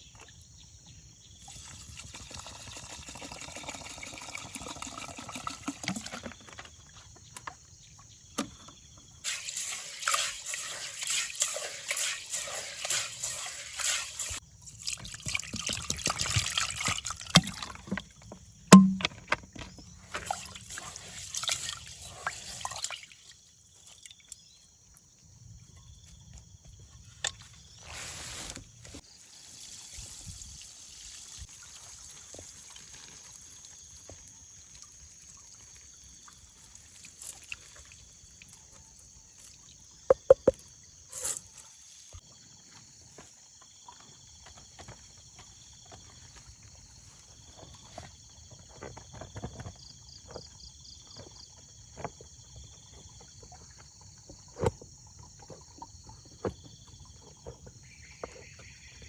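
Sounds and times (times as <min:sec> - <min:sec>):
water pouring and splashing: 0:01.4 - 0:06.7, 0:09.2 - 0:19.1, 0:20.0 - 0:24.3, 0:27.8 - 0:40.6.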